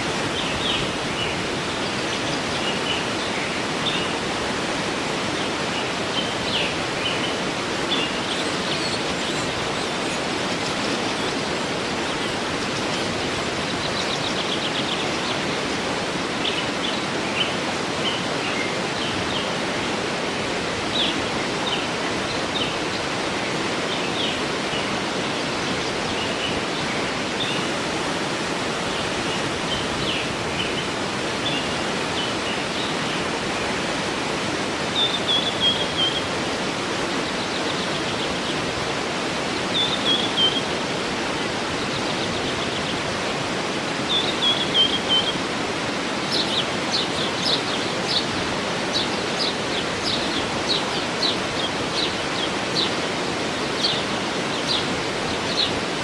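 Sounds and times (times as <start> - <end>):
small birds chirping: 0.0 - 19.6, 34.9 - 43.2, 44.0 - 56.0
waterfall rushing: 0.0 - 56.0.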